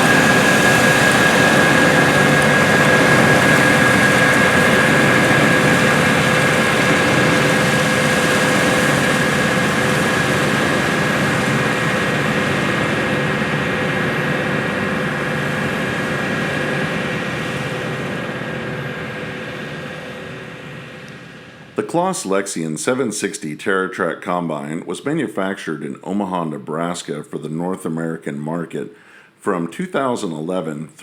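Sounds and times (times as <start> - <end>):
combine harvester engine drone: 0.0 - 22.2
constant high whine: 0.0 - 24.1.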